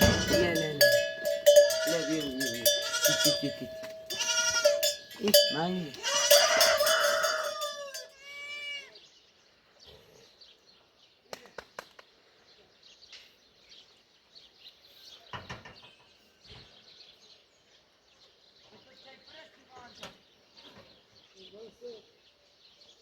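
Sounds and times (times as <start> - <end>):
goat bleating: 0.0 - 9.0.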